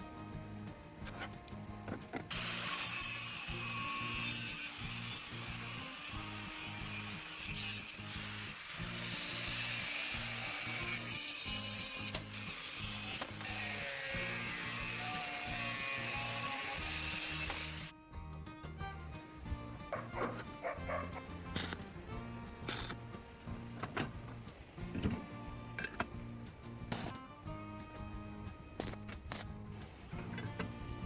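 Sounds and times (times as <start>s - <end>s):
tool grinding metal: 1.0s - 18.0s, 19.8s - 26.1s, 26.9s - 27.2s, 28.8s - 29.5s, 30.2s - 30.8s
background music with beat: 17.9s - 31.0s.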